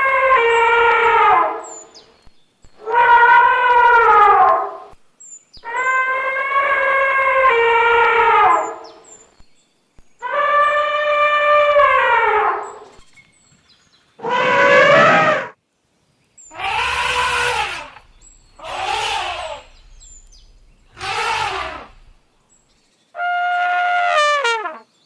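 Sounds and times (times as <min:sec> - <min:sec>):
elephant trumpeting: 0:00.0 - 0:01.7, 0:02.8 - 0:04.8, 0:05.7 - 0:08.8, 0:14.2 - 0:15.6, 0:16.5 - 0:22.2.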